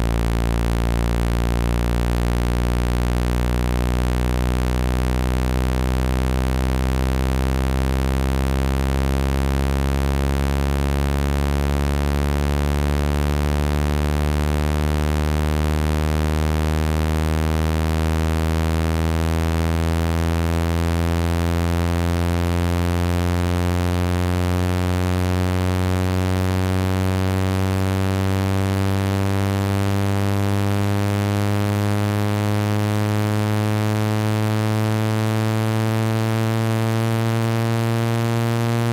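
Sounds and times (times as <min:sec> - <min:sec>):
rising electronic buzzing tone: 0:20.0 - 0:38.9.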